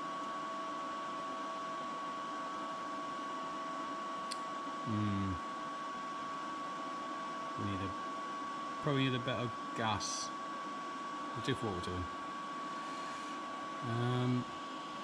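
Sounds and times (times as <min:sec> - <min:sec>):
welder cooling fan whirring: 0:00.0 - 0:15.0
person grunting uh: 0:04.9 - 0:05.4.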